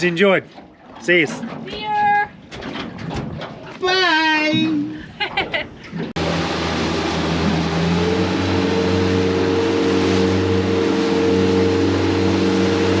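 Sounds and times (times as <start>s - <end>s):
rushing water: 0.0s - 4.9s, 6.0s - 13.0s
outboard motor running: 5.9s - 13.0s.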